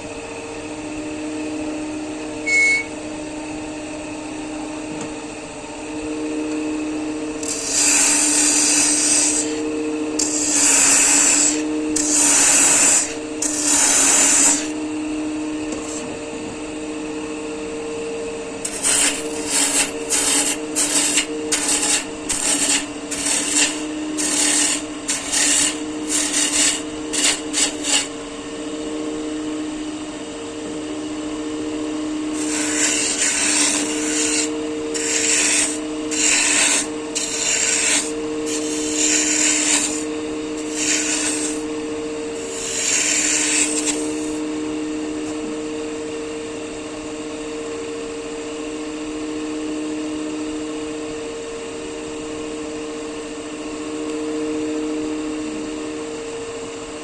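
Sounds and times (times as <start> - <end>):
wood lathe motor hum: 5.5 - 16.6, 18.4 - 29.7, 30.6 - 45.4
tool cutting spinning wood: 7.3 - 14.8, 18.6 - 28.2, 32.3 - 44.4.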